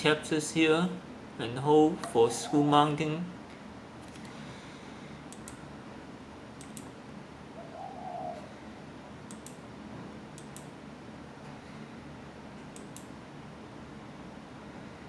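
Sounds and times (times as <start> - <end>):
steady low hiss: 0.0 - 7.6
bird cooing: 7.6 - 8.5.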